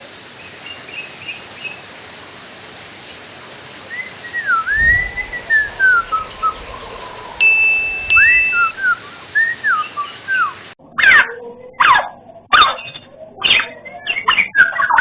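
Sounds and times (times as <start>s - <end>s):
steady hiss: 4.7s - 9.0s
bird chirps: 4.8s - 8.8s.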